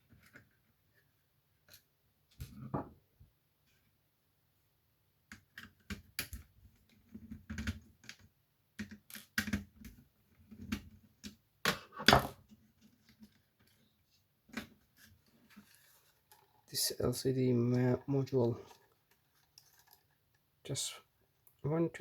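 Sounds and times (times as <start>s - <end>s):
plastic parts clicking and knocking: 5.3s - 13.8s, 18.2s - 20.4s.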